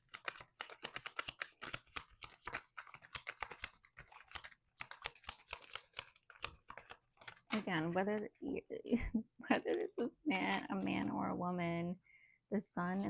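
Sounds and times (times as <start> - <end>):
cards being shuffled: 0.0 - 8.3, 9.6 - 11.1.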